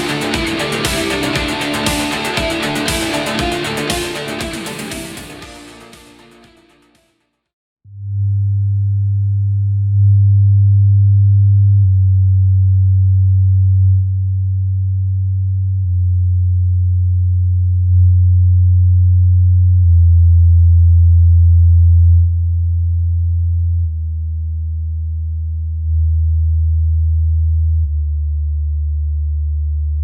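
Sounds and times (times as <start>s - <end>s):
low electronic drone tones: 0.0s - 6.1s.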